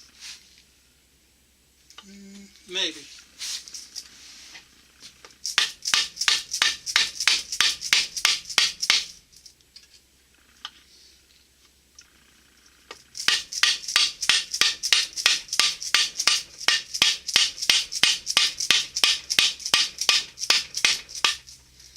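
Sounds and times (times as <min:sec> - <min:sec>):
sharp hammer blows: 0:13.2 - 0:21.4.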